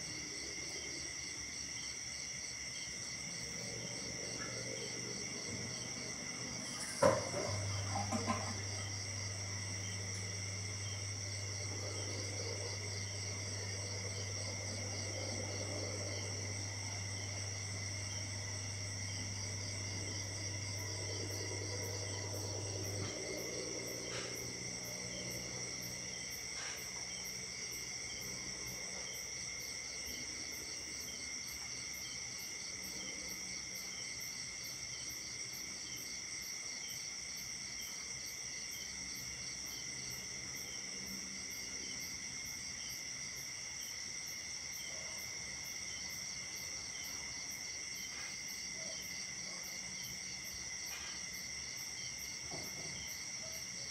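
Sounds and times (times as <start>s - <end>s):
insects trilling: 0.0s - 53.9s
low steady hum: 2.8s - 29.0s.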